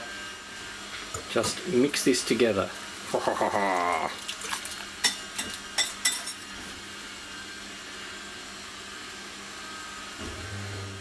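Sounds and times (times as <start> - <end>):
utensil clinking against a bowl: 4.3 - 6.5.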